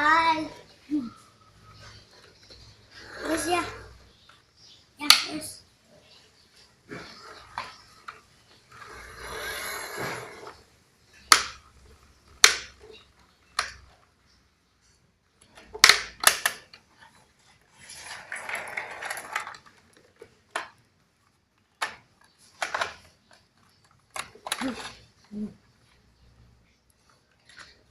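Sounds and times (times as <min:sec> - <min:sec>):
scraping or rattling: 0:06.9 - 0:10.7, 0:17.7 - 0:20.2
toy excavator clacking and knocking: 0:06.9 - 0:14.0, 0:15.4 - 0:16.9, 0:18.0 - 0:20.9, 0:21.7 - 0:25.4.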